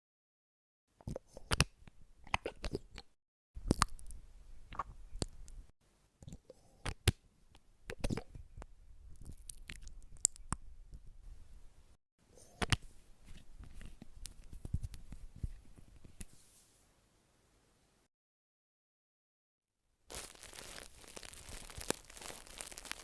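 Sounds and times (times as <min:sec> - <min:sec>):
soft crackling and rustling: 0:12.8 - 0:16.9, 0:20.1 - 0:23.0.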